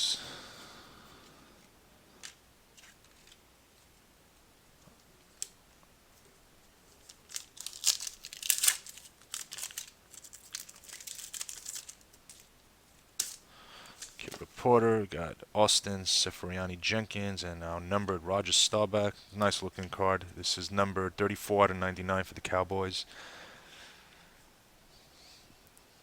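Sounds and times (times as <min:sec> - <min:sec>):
wrapper crinkling: 0:06.9 - 0:12.5.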